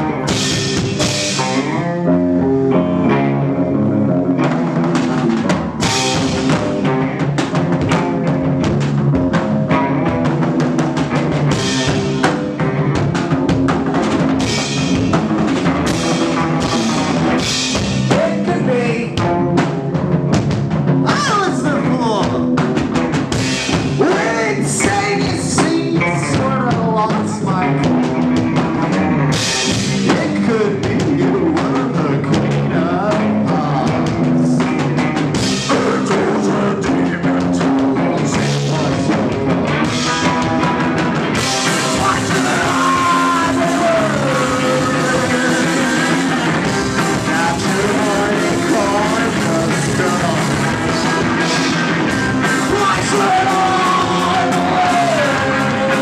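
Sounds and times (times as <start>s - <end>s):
drum kit: 0.0s - 56.0s
electric guitar: 0.0s - 56.0s
rock band playing: 0.0s - 56.0s
person singing: 18.1s - 19.4s, 23.9s - 28.0s, 29.8s - 34.8s, 35.6s - 40.8s, 41.4s - 56.0s.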